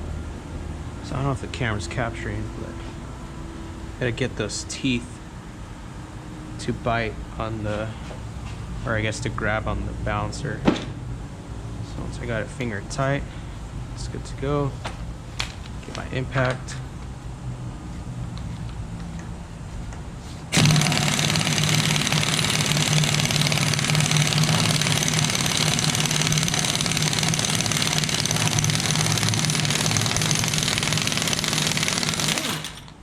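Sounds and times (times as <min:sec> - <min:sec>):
impact wrench hammering: 0:20.5 - 0:33.0.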